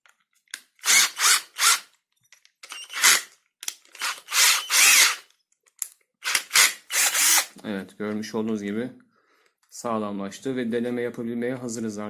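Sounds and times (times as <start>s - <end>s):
cordless drill bursts: 0.8s - 1.9s, 2.7s - 3.3s, 4.0s - 5.3s, 6.2s - 7.6s.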